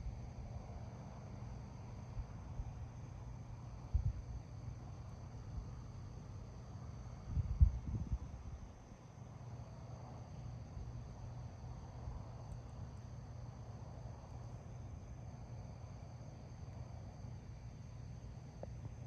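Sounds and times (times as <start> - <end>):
faint low rumble: 0.0 - 8.8.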